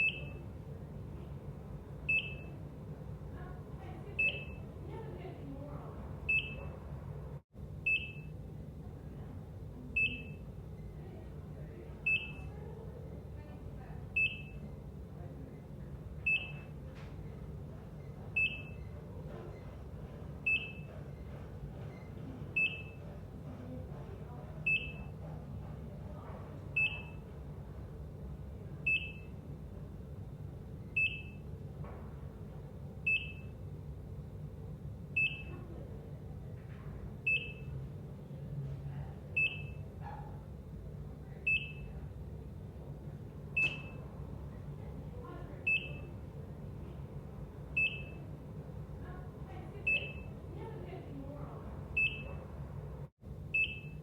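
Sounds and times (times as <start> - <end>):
heart monitor beeping: 0.0 - 0.5, 2.0 - 2.6, 4.2 - 4.7, 6.3 - 6.8, 7.8 - 8.4, 10.0 - 10.6, 12.0 - 12.5, 14.1 - 14.8, 16.2 - 17.4, 18.0 - 23.8, 24.6 - 25.8, 26.6 - 27.4, 28.8 - 29.4, 30.8 - 31.5, 33.0 - 33.6, 35.1 - 35.6, 37.2 - 37.8, 39.4 - 40.4, 41.5 - 41.9, 43.5 - 44.1, 45.6 - 46.2, 47.7 - 48.3, 49.8 - 50.4, 51.9 - 52.4, 53.5 - 54.0.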